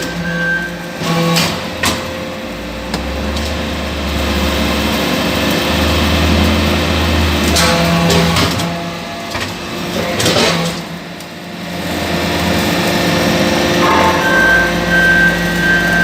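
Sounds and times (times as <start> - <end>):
hydraulic press machine hum: 0.0 - 16.0
deep low drone: 13.5 - 16.0.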